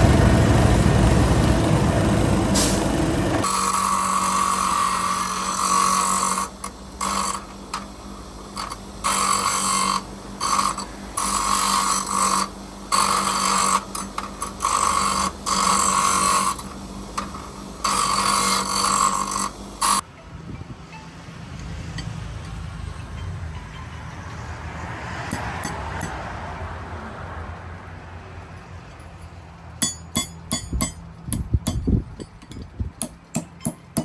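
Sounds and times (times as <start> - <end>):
angle grinder grinding steel: 3.4 - 26.2.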